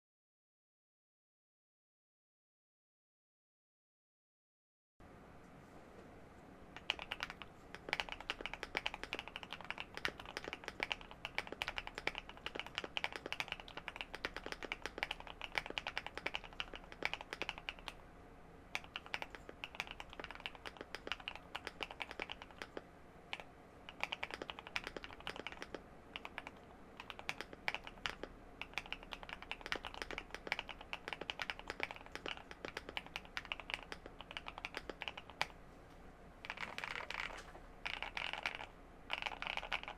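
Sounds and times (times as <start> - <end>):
mechanical keyboard typing: 6.8 - 18.0, 18.7 - 35.6, 36.4 - 39.9.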